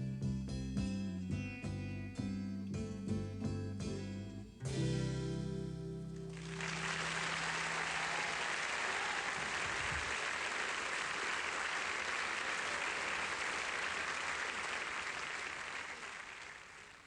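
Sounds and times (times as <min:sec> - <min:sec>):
audience applauding: 0:06.3 - 0:17.0.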